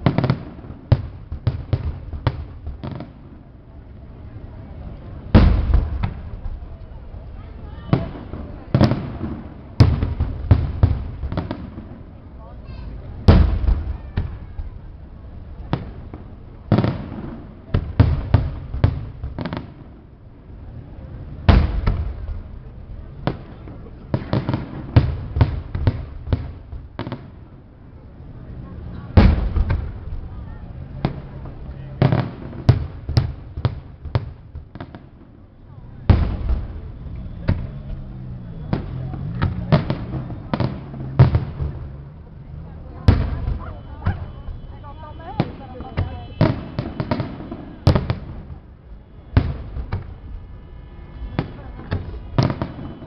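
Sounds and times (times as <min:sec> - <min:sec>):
fireworks bangs: 0:00.0 - 0:53.0
fireworks boom: 0:05.2 - 0:06.9, 0:07.8 - 0:12.2, 0:13.1 - 0:14.8, 0:21.4 - 0:27.5, 0:28.8 - 0:35.3, 0:35.9 - 0:53.0.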